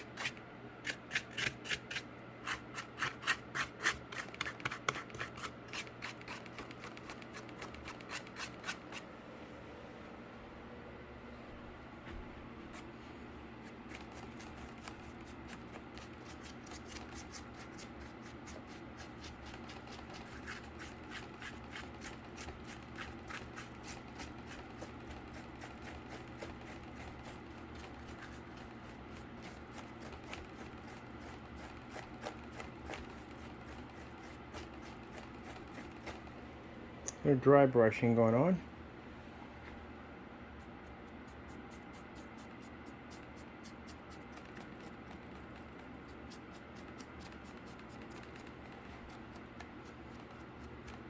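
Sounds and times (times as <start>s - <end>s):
paintbrush brushing cardboard: 12.7s - 36.3s, 40.6s - 51.0s.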